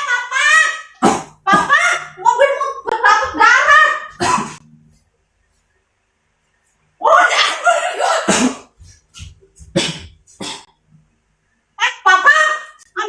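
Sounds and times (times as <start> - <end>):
person sneezing loudly: 1.0 - 1.8, 4.2 - 4.7, 7.3 - 8.8, 9.6 - 10.7
short coughs: 8.1 - 9.0, 9.6 - 10.7.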